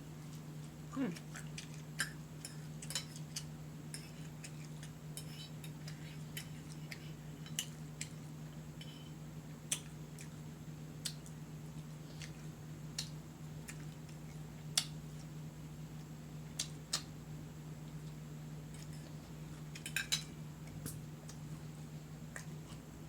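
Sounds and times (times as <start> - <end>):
steady low hum: 0.0 - 23.0
close chewing with mouth smacks: 0.2 - 8.3, 9.7 - 10.4, 11.0 - 15.4, 16.0 - 17.2, 22.3 - 22.9.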